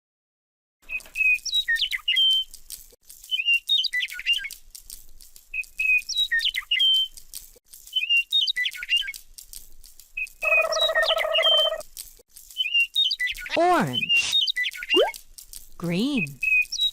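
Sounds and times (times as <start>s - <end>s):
electronic bird chirps: 10.4s - 11.8s.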